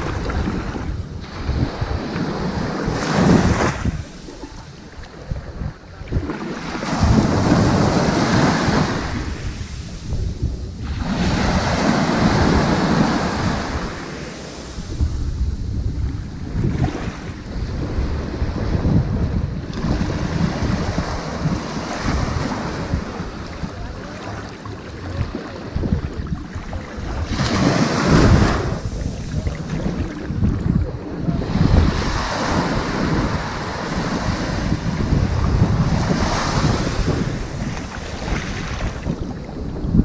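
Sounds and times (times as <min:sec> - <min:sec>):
ocean waves washing onto sand: 0:00.0 - 0:40.0
wind rumble on microphone: 0:00.0 - 0:40.0.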